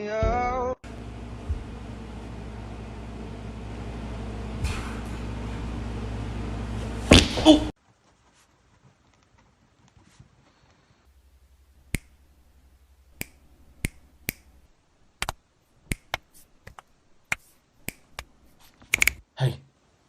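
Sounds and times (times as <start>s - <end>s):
sharp clicks: 15.2s - 19.2s.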